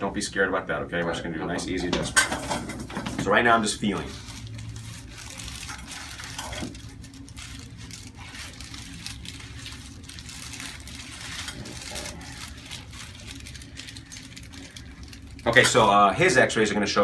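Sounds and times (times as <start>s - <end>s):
low room hum: 0.0s - 17.0s
fabric rustling: 3.3s - 15.9s.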